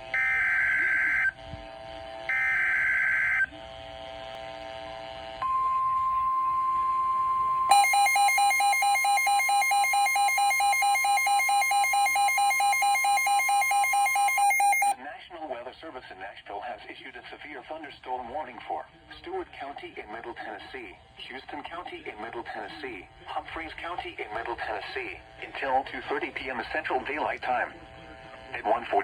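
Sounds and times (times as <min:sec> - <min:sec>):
steady warning alarm tone: 0:00.0 - 0:01.4, 0:02.2 - 0:04.0, 0:05.4 - 0:15.0
pulsing electronic beep: 0:05.4 - 0:14.9.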